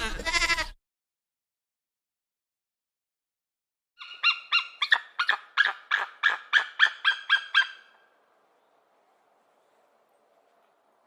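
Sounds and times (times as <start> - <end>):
animal calling: 4.0 - 8.1.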